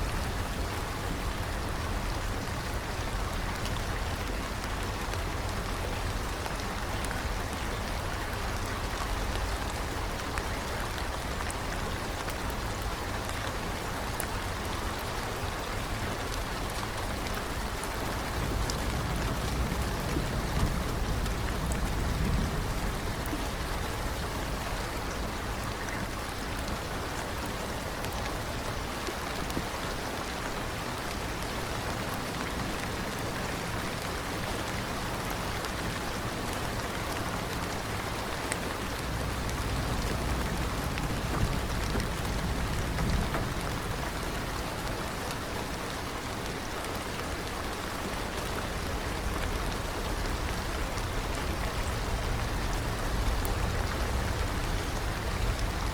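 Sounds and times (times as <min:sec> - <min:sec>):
steady rain hiss: 0:00.0 - 0:55.9
raindrops ticking: 0:16.3 - 0:25.9, 0:37.4 - 0:45.8, 0:48.3 - 0:55.9
low rumble: 0:38.9 - 0:44.9.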